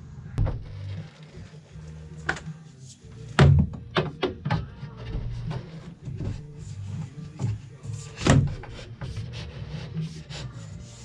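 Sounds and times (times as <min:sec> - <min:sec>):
quiet background music: 0:00.0 - 0:11.0
plumbing parts clicking and knocking: 0:03.3 - 0:09.3.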